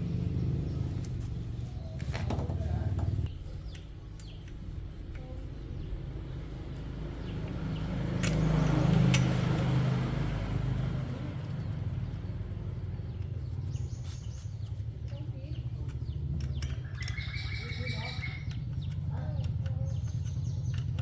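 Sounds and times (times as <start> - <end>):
small motorcycle engine running: 0.0 - 3.3, 4.5 - 21.0
sharp clicks: 3.2 - 5.4, 7.4 - 9.5, 14.6 - 21.0.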